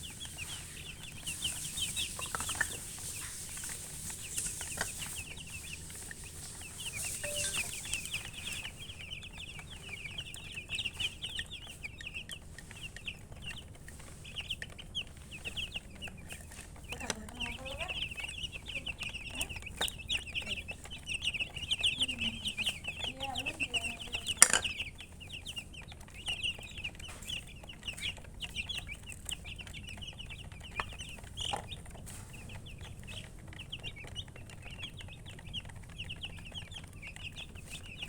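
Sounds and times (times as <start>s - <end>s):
baby chicks peeping: 0.0s - 38.0s
lower bird call: 7.0s - 8.4s.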